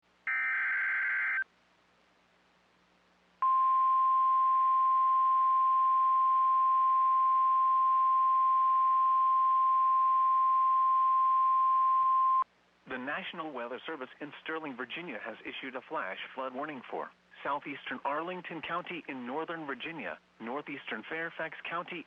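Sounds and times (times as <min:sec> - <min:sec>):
steady electronic alarm tone: 0:00.3 - 0:01.4.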